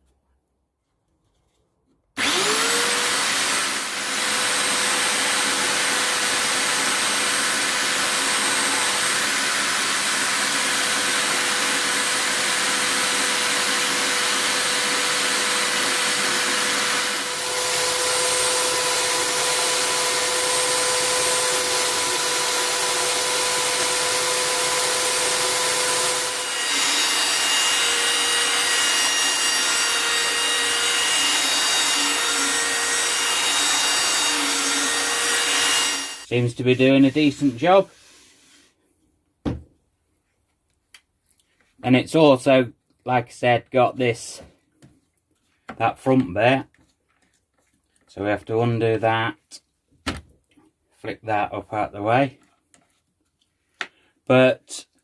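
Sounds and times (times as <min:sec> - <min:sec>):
belt sander sanding wood: 0:02.2 - 0:38.7.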